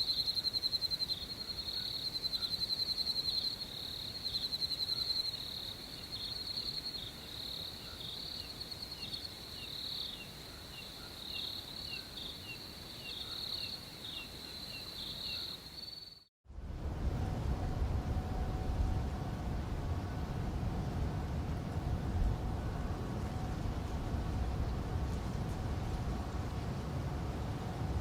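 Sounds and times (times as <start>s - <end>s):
crickets trilling: 0.0s - 16.3s
low rumble: 16.5s - 28.0s.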